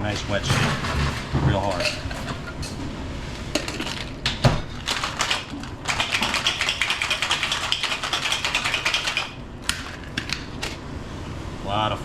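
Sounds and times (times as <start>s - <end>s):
ice rattling in cocktail shaker: 4.8s - 10.2s.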